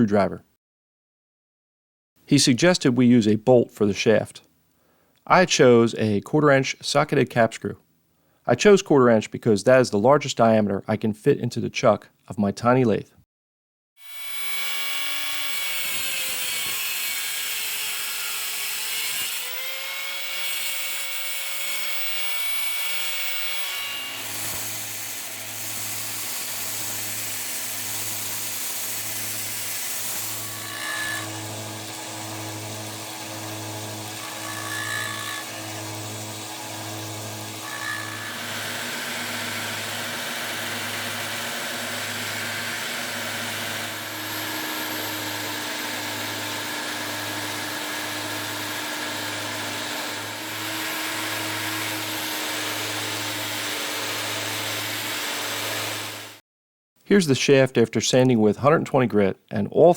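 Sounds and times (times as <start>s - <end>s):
lathe motor running: 31.2s - 56.3s.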